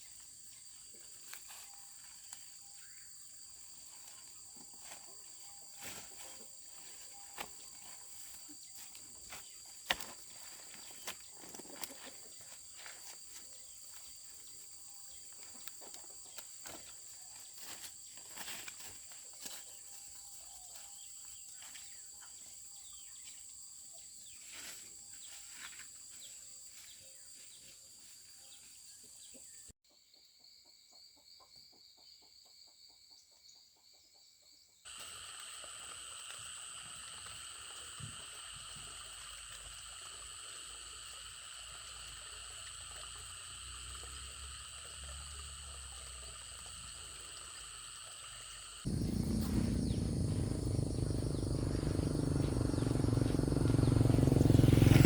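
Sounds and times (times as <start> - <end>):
faint outdoor ambience: 0.0 - 29.7, 34.8 - 55.0
fast pulsing insect trill: 34.9 - 55.0
high-pitched insect drone: 34.9 - 55.0.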